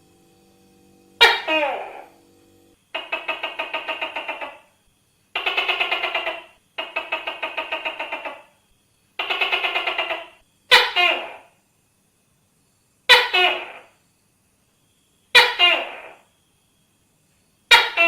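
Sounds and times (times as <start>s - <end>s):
gecko rattling calls: 1.2s - 2.0s, 2.8s - 8.6s, 9.2s - 11.6s, 13.1s - 14.0s, 15.3s - 16.3s, 17.7s - 18.0s.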